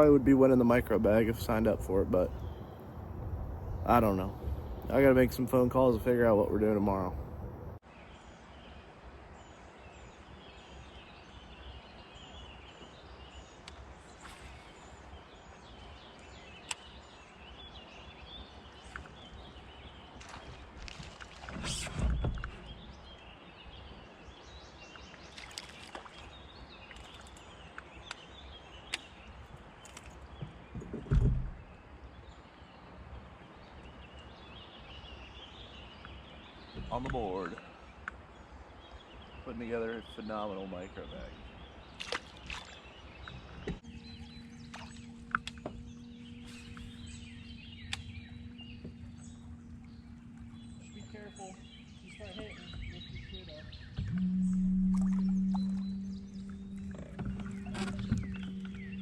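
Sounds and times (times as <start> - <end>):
low rumble: 0.0 - 7.8, 43.8 - 59.0
steady low hum: 0.0 - 7.8, 43.8 - 59.0
birds chirping: 0.0 - 59.0
low thump: 30.4 - 31.6, 53.9 - 59.0
faint bird chirps: 38.7 - 59.0.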